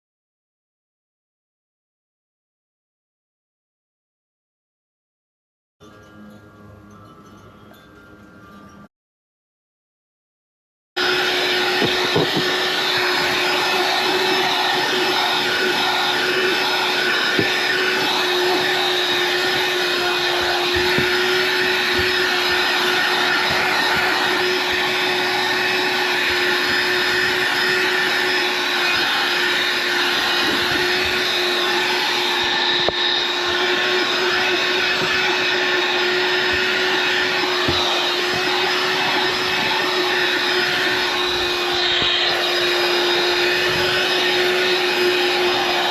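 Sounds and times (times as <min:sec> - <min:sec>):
handheld vacuum running: 0:11.0 - 0:45.9.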